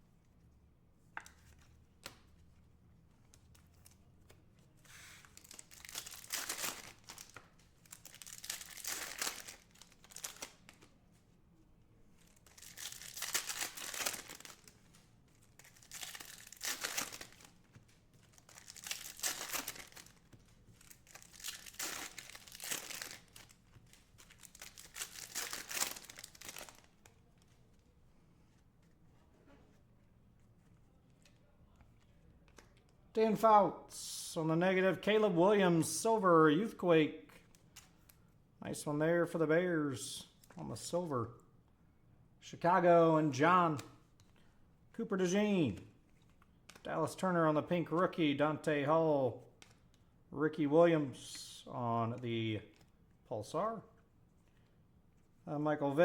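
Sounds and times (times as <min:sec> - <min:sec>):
foil wrappers tearing and crinkling: 0:05.2 - 0:10.7, 0:12.3 - 0:14.8, 0:15.6 - 0:17.6, 0:18.3 - 0:20.2, 0:20.8 - 0:26.9.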